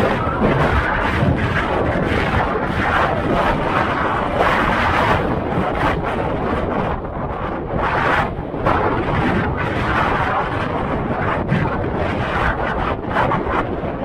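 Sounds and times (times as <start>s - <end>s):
wind buffeting microphone: 0.0s - 14.0s.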